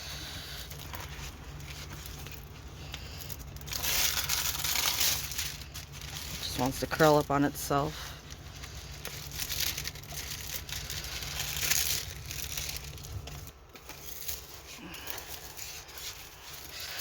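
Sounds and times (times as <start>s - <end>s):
plastic-covered canvas crinkling: 0.0s - 17.0s.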